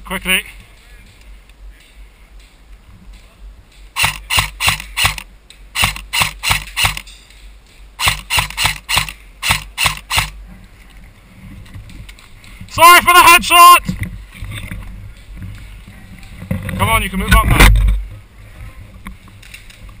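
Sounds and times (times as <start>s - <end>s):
airsoft rifle shots: 4.0s - 7.1s, 8.0s - 10.4s.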